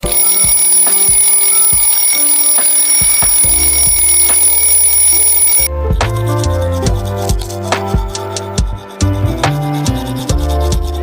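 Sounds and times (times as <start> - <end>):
shrill electronic tone: 0.0 - 5.7
background music with steady beat: 0.0 - 11.0.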